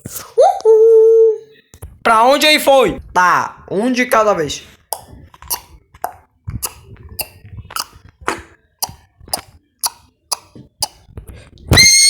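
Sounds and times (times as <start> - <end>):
sharp taps: 5.0 - 11.0.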